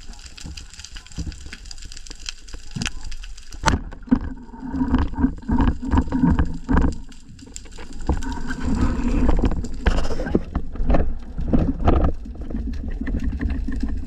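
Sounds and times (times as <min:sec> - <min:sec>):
water sounds: 0:00.0 - 0:14.0
scattered clicks and knocks: 0:03.6 - 0:08.4.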